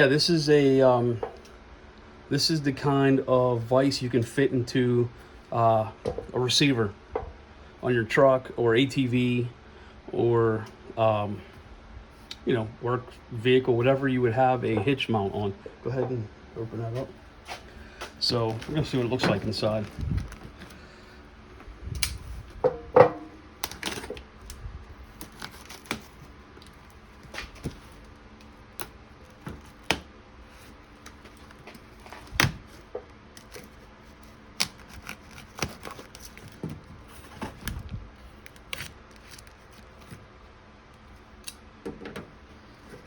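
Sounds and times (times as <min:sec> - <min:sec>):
cardboard box being unpacked: 0:17.6 - 0:20.9, 0:23.6 - 0:40.2.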